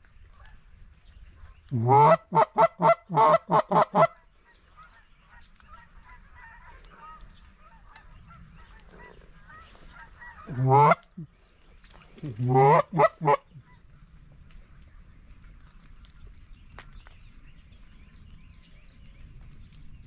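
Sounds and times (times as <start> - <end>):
distant goose chatter: 1.4 - 14.0
loud goose honks: 1.8 - 4.2, 9.5 - 11.1, 12.4 - 13.5.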